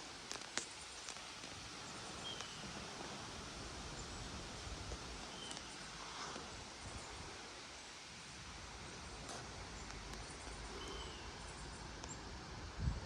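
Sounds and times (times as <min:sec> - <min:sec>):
wind rushing through foliage: 0:00.0 - 0:13.0
wind buffeting microphone: 0:12.6 - 0:13.0.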